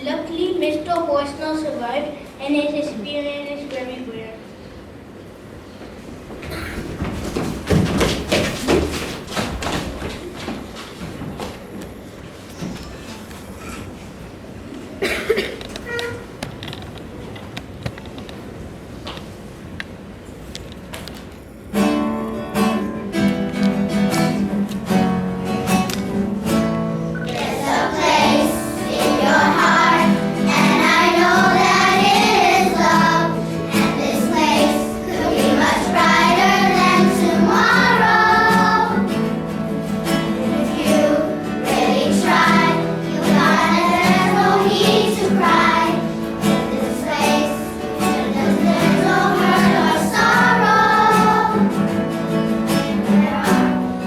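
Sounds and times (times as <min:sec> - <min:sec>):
children singing: 0:27.3 - 0:54.0.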